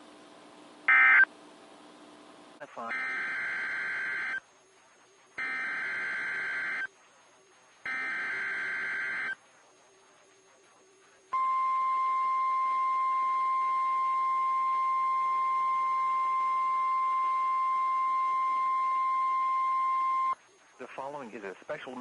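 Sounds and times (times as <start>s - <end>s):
steady warning alarm tone: 0.9s - 1.3s, 2.9s - 4.4s, 5.3s - 6.9s, 7.9s - 9.4s, 11.3s - 20.4s.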